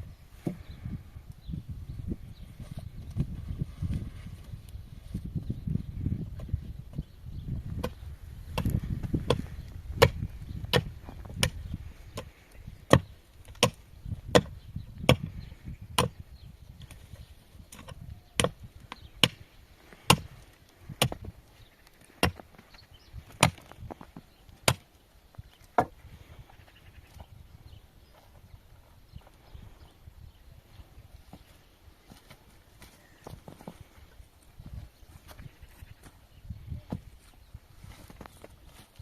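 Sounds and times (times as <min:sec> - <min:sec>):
sharp wooden knocks: 0:12.9 - 0:15.4.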